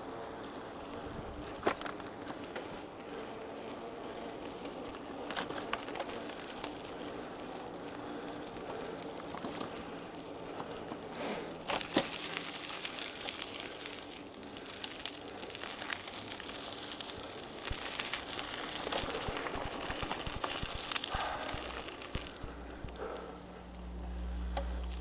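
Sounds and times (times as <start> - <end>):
bicycle tyres on dirt: 0.0 - 25.0
bike clicks and knocks: 1.4 - 2.8, 4.8 - 13.6, 15.7 - 23.2.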